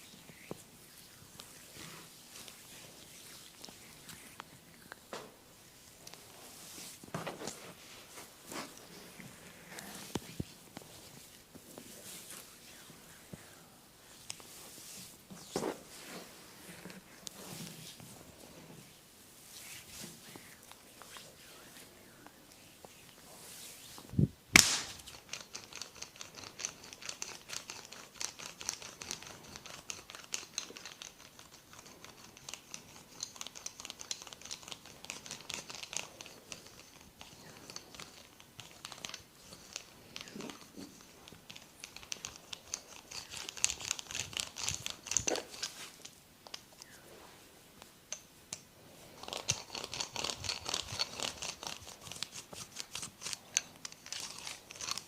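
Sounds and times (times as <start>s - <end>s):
hands rubbing skin and hair: 0.0s - 5.3s, 6.0s - 25.4s, 36.6s - 47.6s
sharp click: 24.6s - 25.0s.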